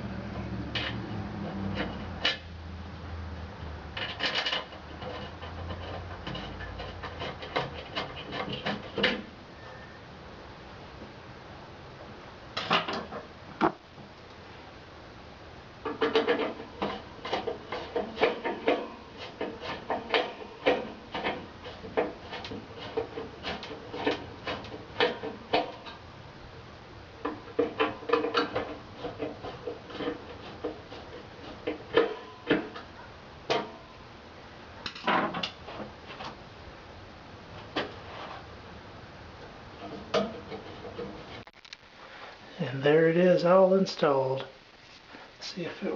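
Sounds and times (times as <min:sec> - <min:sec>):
clicking knocking and scraping parts: 0:00.6 - 0:02.5, 0:03.9 - 0:09.3, 0:12.6 - 0:14.3, 0:15.8 - 0:26.0, 0:27.2 - 0:33.9, 0:34.8 - 0:36.4, 0:37.6 - 0:38.5, 0:39.4 - 0:41.8.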